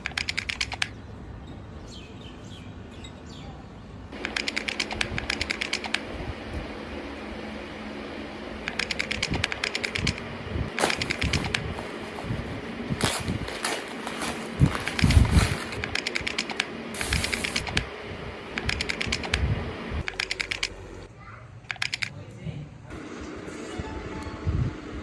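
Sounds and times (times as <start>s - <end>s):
short noisy bursts: 10.7s - 17.8s
typing on a keyboard: 21.7s - 22.1s.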